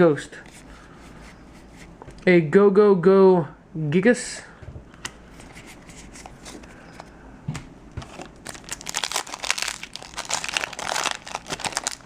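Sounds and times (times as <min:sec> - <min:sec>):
foil wrapper crinkling: 0:08.0 - 0:12.0.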